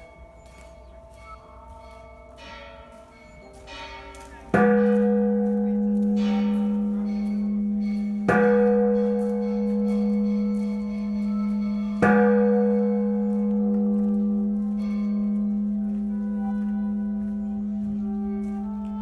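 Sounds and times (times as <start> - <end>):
temple bell ringing: 0.0 - 19.0.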